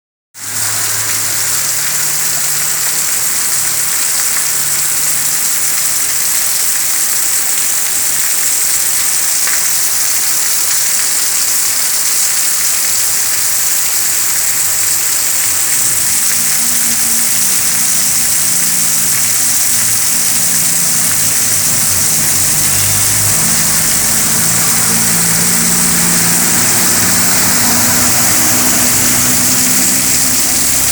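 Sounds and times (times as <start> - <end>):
heavy rain falling: 0.4 - 30.9
low motor hum: 16.2 - 30.9.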